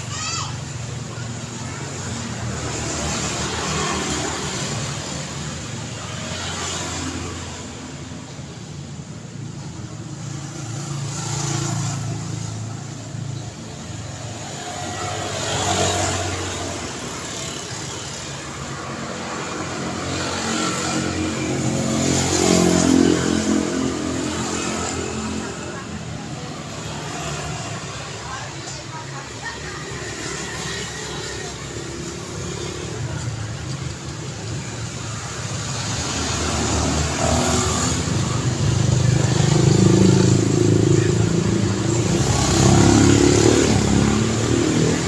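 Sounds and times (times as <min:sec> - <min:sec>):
vehicles passing: 0:00.0 - 0:45.0.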